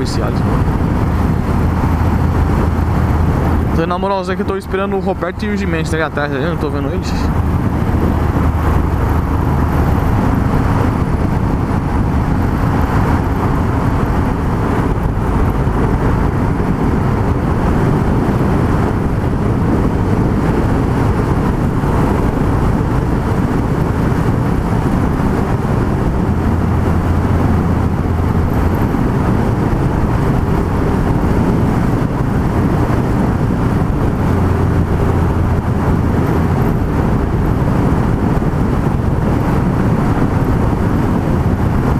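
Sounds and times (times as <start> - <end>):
wind and road noise: 0.0 - 41.9.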